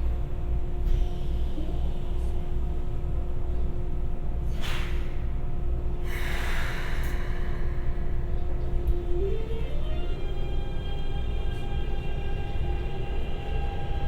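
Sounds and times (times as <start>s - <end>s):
electric train equipment humming: 5.3s - 14.0s
compressed air hiss: 6.0s - 8.2s.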